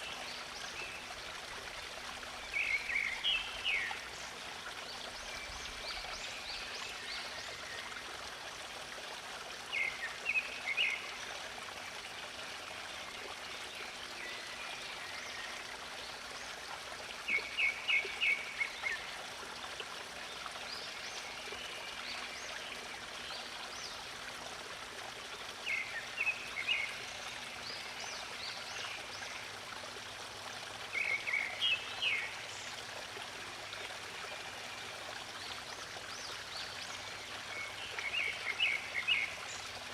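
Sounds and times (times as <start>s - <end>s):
stream rushing: 29.3s - 39.9s.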